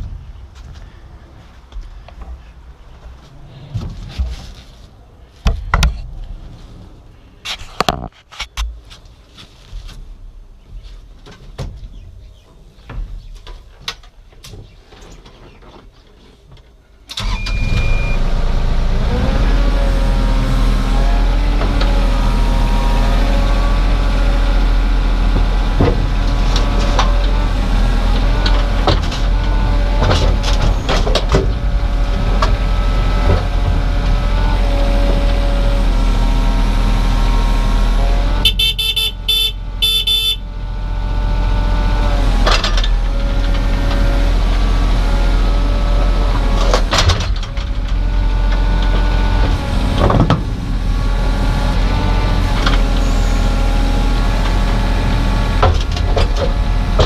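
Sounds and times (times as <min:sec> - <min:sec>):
diesel engine running: 0:17.2 - 0:57.0.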